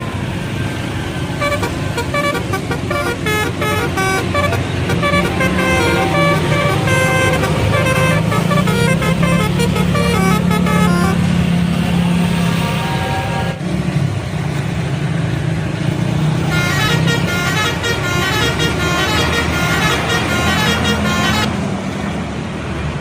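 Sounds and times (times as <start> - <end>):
bus engine running: 0.0 - 23.0
bus horn playing a tune: 1.3 - 11.6, 12.4 - 13.6, 16.4 - 21.6.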